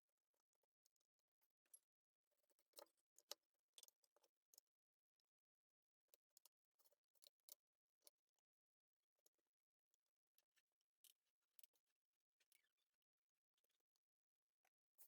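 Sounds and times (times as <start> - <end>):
faint clicks and taps: 1.7 - 4.7.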